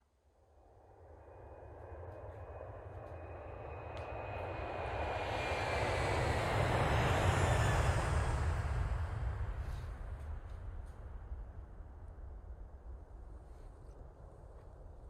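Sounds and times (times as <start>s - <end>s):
aircraft engine passing overhead: 1.2s - 11.8s.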